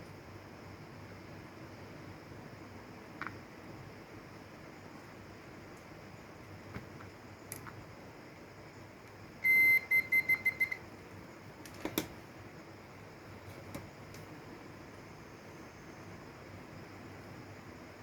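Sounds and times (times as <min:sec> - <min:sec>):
faint steady hiss: 0:00.0 - 0:18.0
high-pitched electronic beeps: 0:09.4 - 0:10.8.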